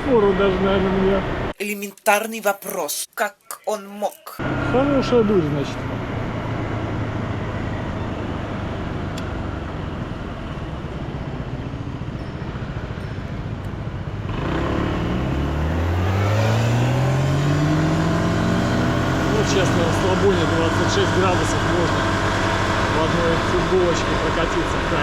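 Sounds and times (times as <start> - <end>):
wind and road noise: 4.4 - 19.4
scooter engine: 12.6 - 25.0.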